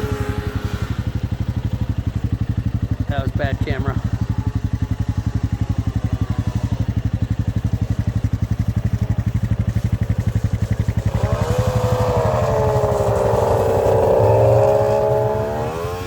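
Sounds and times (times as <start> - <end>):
snowmobile engine revving: 0.0 - 1.3, 8.6 - 16.0
engine idling with low thumping: 0.0 - 16.0.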